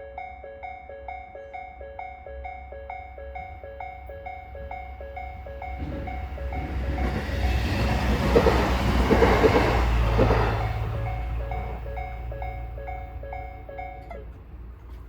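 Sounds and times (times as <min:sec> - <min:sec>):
train passing with wheel clicks: 0:00.2 - 0:15.0
level crossing bell ringing: 0:11.3 - 0:14.4.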